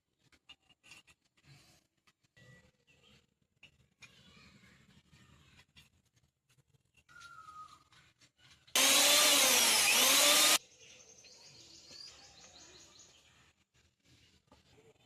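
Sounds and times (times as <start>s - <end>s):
mixer grinder motor whine: 8.8s - 10.6s.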